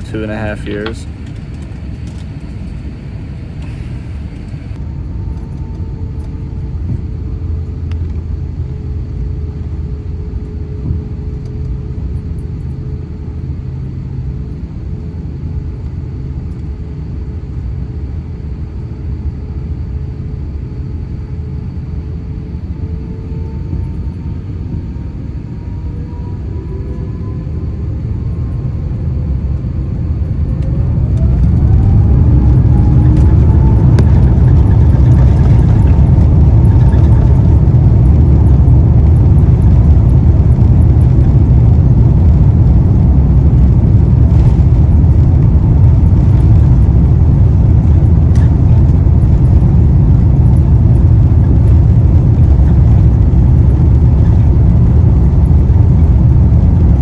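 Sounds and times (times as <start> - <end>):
jet engines spooling up: 22.4 - 57.0.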